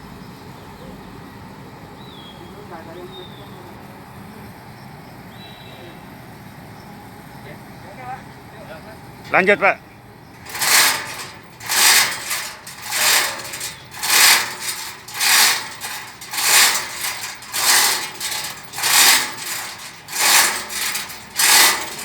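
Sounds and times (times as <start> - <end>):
hand tool rasping strokes: 10.4 - 22.0.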